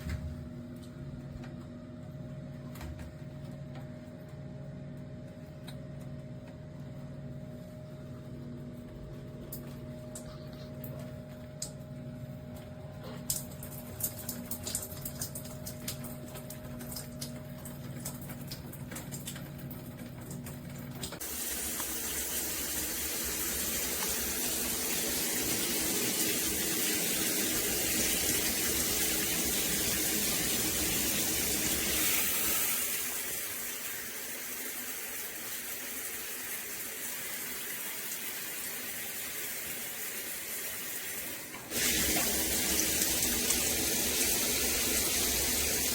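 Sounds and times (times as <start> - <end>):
shower water spraying: 13.0 - 19.5, 20.2 - 45.9.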